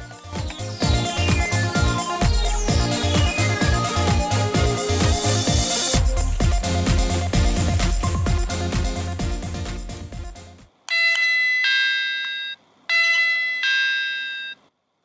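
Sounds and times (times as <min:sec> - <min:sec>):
electronic background music: 0:00.0 - 0:10.7
two-note electronic doorbell chime: 0:10.9 - 0:14.6.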